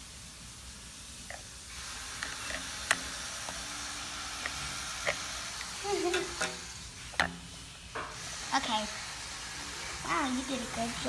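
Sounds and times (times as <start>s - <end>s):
plastic toy clicks and taps: 2.2s - 3.6s.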